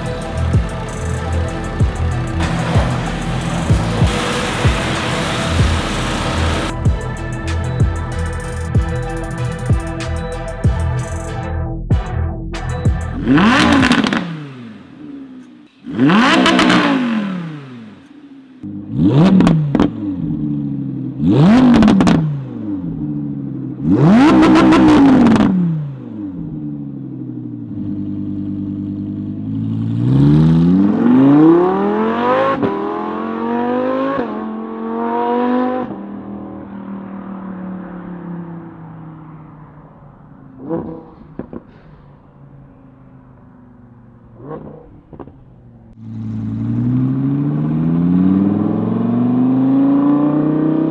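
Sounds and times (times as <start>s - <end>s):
exhaust cracks: 0.0s - 10.2s, 12.6s - 32.8s, 38.8s - 48.6s
car engine revving: 0.0s - 10.4s, 12.6s - 50.9s.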